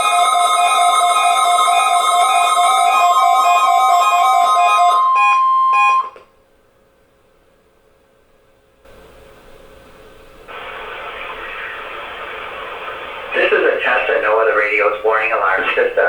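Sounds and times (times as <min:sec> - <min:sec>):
radio alarm beeps pulsing: 0:00.0 - 0:06.2
steady warning alarm tone: 0:00.0 - 0:06.3.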